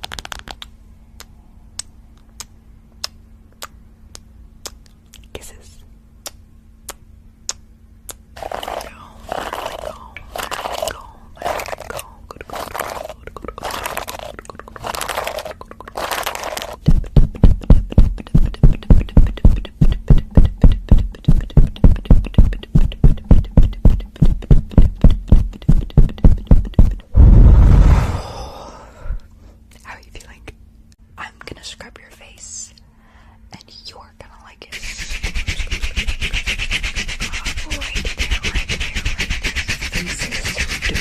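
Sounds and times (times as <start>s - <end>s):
heavy rubbing rumble: 27.2s - 28.6s
scratchy brushing on microphone: 34.7s - 41.0s.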